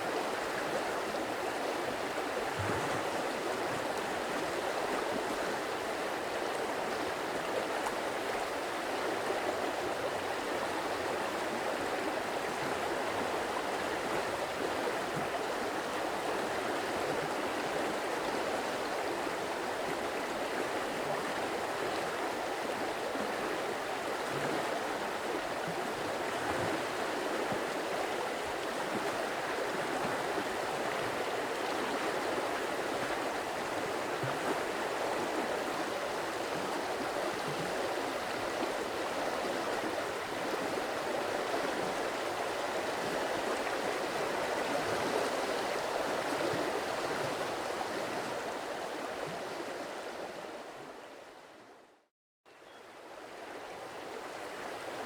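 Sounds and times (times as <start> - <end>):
stream water rushing: 0.0 - 51.0.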